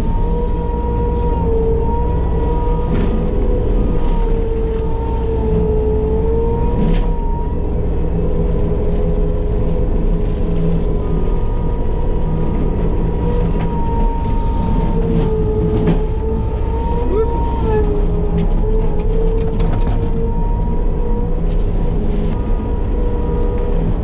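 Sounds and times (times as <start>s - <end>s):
forestry mulcher whining: 0.0s - 24.0s.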